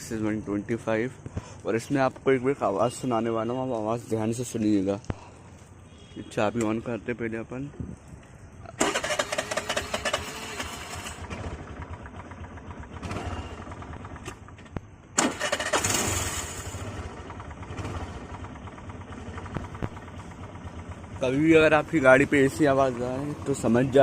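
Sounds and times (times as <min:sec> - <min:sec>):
scooter engine starting: 0:08.7 - 0:23.8
scooter engine running: 0:08.8 - 0:24.0.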